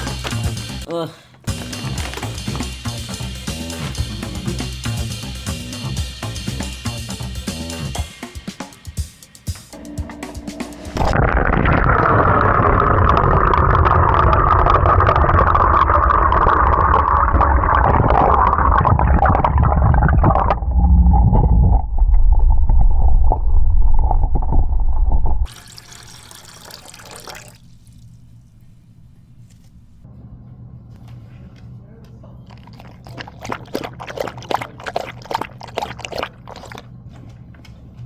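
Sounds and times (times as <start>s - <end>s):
water running and gushing: 25.5s - 28.7s, 32.5s - 36.9s.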